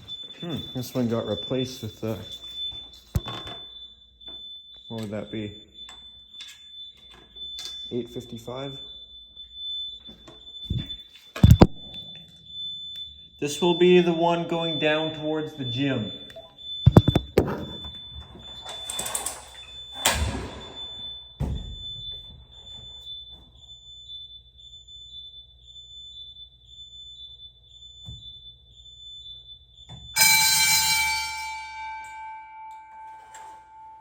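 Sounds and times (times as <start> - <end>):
faint high-pitched beep: 0.0 - 3.6, 10.0 - 12.4, 13.0 - 17.9
fire alarm ringing: 0.0 - 34.0
fire alarm pull station clicks: 2.5 - 8.0, 16.3 - 21.1, 29.9 - 34.0.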